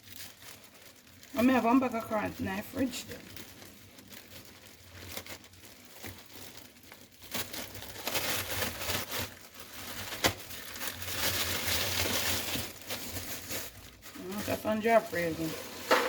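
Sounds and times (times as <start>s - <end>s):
plastic bag crinkling: 0.0s - 16.0s.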